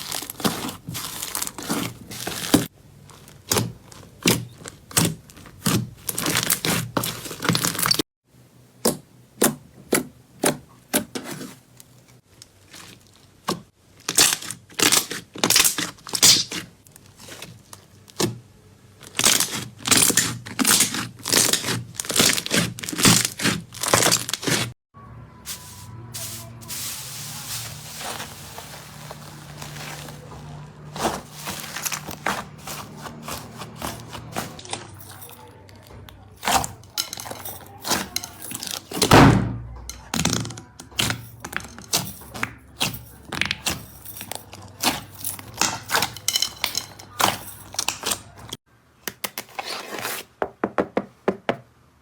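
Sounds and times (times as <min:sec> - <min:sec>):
soft rustle: 0:25.5 - 0:35.2.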